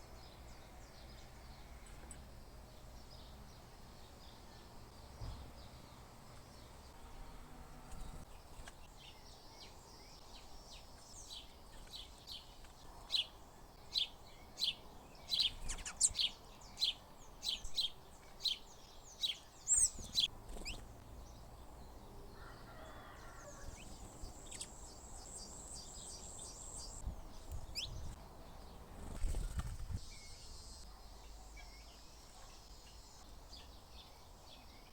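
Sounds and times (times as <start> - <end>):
small birds chirping: 0.0 - 34.9
buzzy bird trill: 23.6 - 27.0.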